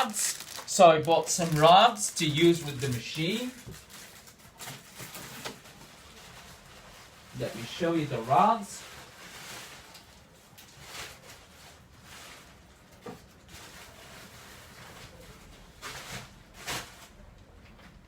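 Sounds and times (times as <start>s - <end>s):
packs knocking and rustling: 0.0s - 5.8s.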